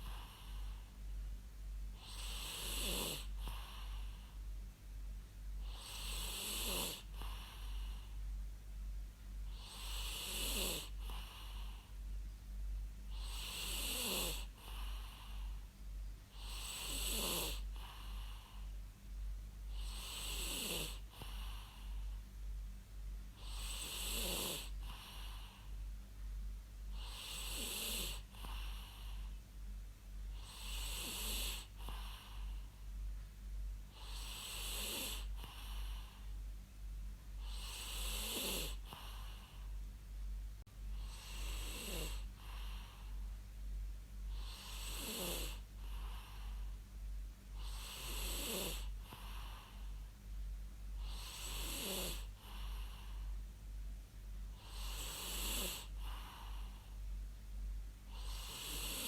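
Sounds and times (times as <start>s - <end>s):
steady low hum: 0.0s - 59.0s
person snoring: 2.0s - 4.1s, 5.6s - 8.0s, 9.6s - 11.8s, 13.1s - 15.6s, 16.4s - 18.6s, 19.7s - 22.1s, 23.4s - 25.6s, 27.0s - 29.2s, 30.4s - 32.5s, 34.0s - 36.2s, 37.4s - 39.7s, 41.0s - 43.1s, 44.3s - 46.6s, 47.6s - 49.9s, 51.0s - 53.2s, 54.6s - 56.8s, 58.1s - 59.0s.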